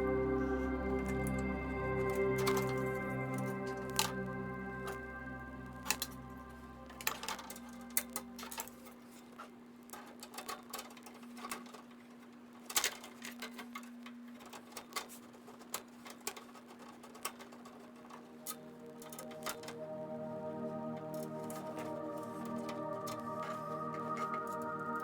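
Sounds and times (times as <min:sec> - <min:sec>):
steady low hum: 0:00.0 - 0:09.1.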